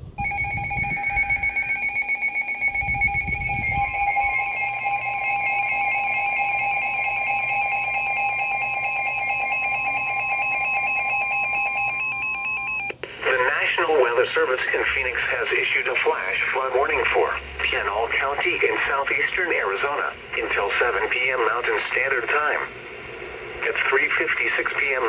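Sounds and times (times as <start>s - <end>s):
electronic alarm tones: 0.1s - 13.0s.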